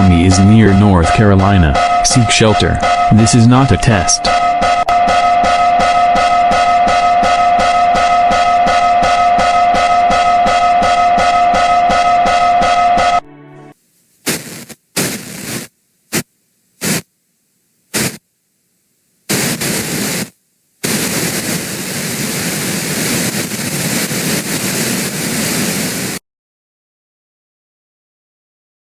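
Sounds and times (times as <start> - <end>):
static hiss bursts: 13.8 - 26.2.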